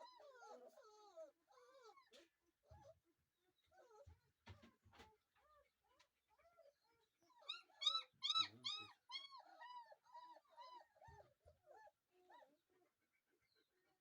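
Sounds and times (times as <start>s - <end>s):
puppies whining and crying: 0.0s - 3.0s, 5.4s - 12.6s.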